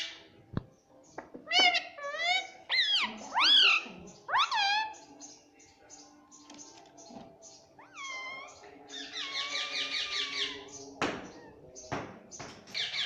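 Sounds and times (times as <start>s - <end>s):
parrot calling: 1.4s - 5.0s, 7.8s - 10.7s.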